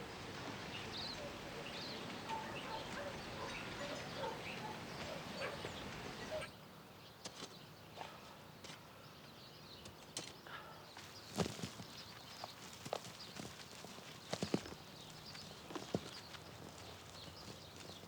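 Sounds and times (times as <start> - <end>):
bird chirps: 0.2 - 6.5.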